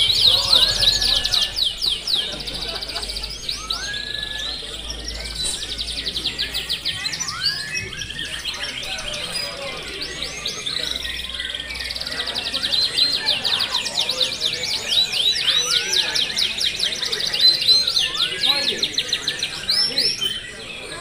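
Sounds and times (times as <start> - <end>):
canaries singing: 0.0 - 21.0.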